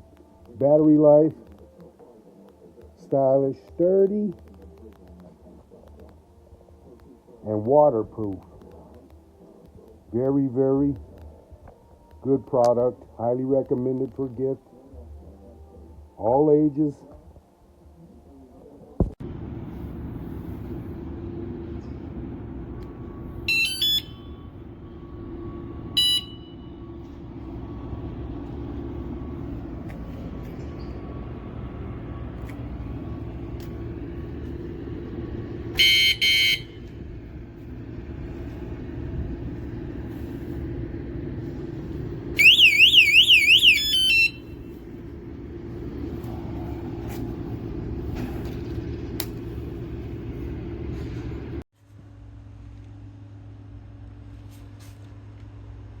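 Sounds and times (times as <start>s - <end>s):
low background hum: 0.0s - 56.0s
warbling alarm siren: 22.9s - 29.9s, 35.0s - 37.6s, 41.5s - 49.0s.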